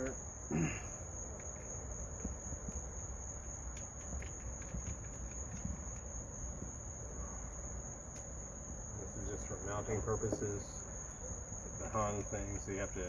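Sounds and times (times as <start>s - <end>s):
steady high-pitched whine: 0.0s - 13.0s
small parts clicking and tapping: 3.6s - 6.2s.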